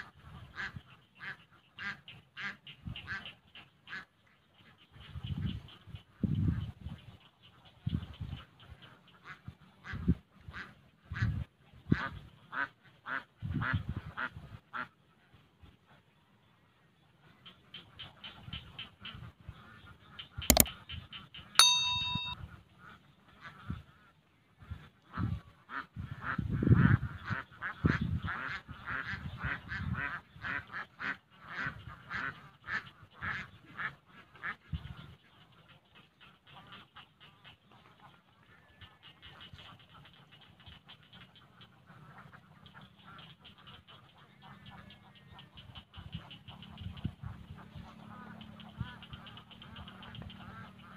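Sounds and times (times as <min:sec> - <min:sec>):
waterfowl quacking and honking: 0:00.0 - 0:05.8, 0:25.2 - 0:50.9
ducks quacking: 0:41.2 - 0:50.9.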